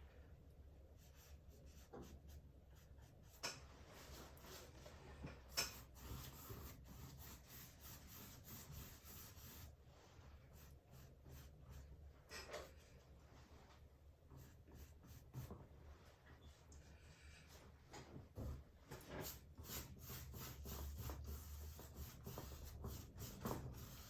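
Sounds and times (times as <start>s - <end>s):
paintbrush scratching on canvas: 5.6s - 11.8s.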